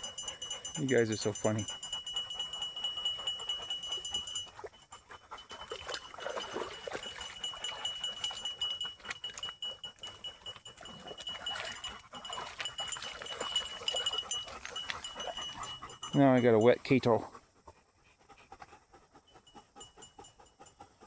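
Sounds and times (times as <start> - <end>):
dogs whining: 0.0 - 16.4.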